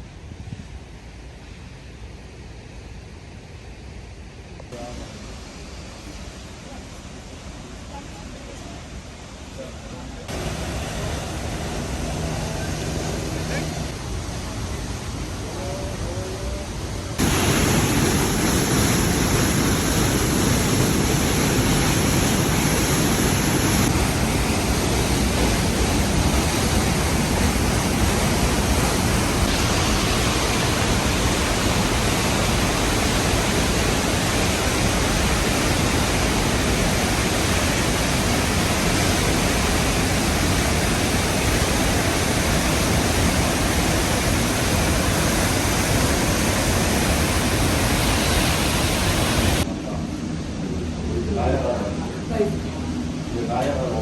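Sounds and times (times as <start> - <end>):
waterfall rushing: 10.2 - 49.7.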